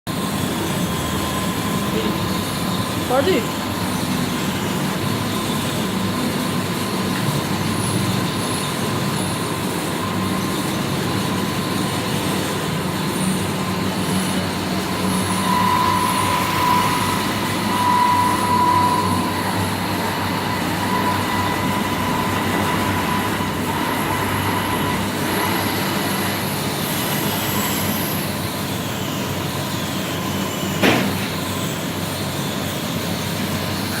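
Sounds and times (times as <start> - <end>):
cutting machine clatter and whine: 0.1 - 34.0
sharp squeal dropping in pitch: 14.9 - 26.3.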